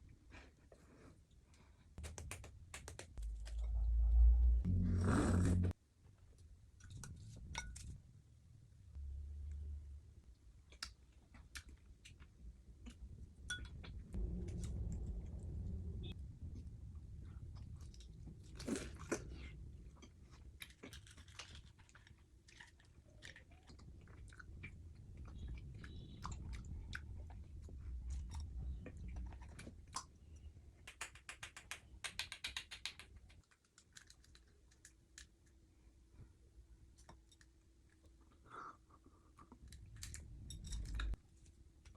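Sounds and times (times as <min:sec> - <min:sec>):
wet mouth clicks: 0:02.0 - 0:03.2
person chewing crunchy snack: 0:18.4 - 0:22.9.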